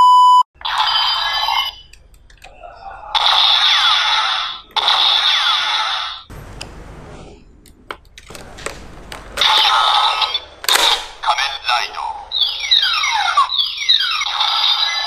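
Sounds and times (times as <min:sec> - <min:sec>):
toy gun electronic sound effects: 0:00.6 - 0:01.9, 0:03.2 - 0:06.3, 0:09.4 - 0:15.0.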